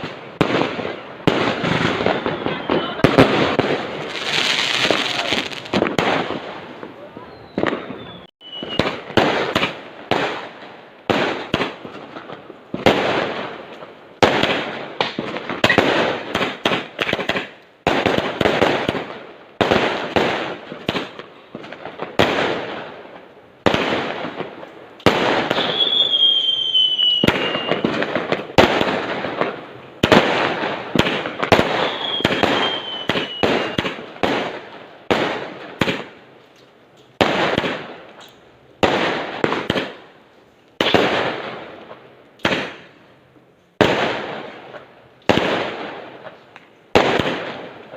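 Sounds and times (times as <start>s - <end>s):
fireworks banging: 0.0s - 36.2s, 37.1s - 40.1s
falling whistles: 7.2s - 9.0s, 25.5s - 27.9s, 31.8s - 33.8s.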